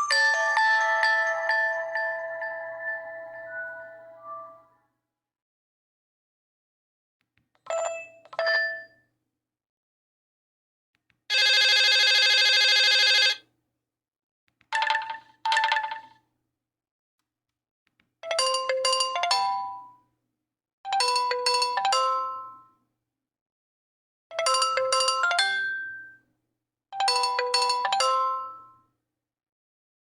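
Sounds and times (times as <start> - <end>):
buzzy ringtone: 0.0 - 4.7, 11.3 - 13.4
chime notes: 0.0 - 4.7.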